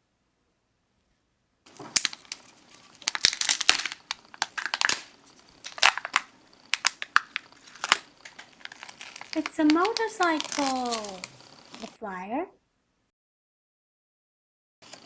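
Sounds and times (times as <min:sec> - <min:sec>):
wrapper tearing and crinkling: 0:01.7 - 0:12.0.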